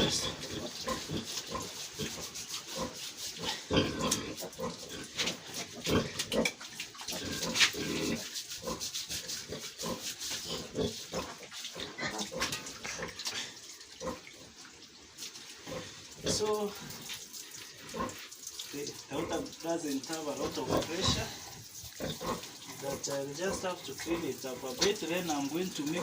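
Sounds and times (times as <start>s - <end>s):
pigs grunting: 0.0s - 14.6s, 20.2s - 26.0s.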